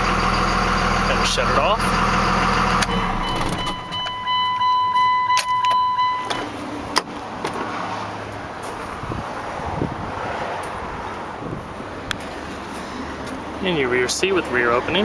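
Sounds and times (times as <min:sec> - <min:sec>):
diesel engine idle shutting off: 0:00.0 - 0:04.4
warning chime tone: 0:01.4 - 0:06.5.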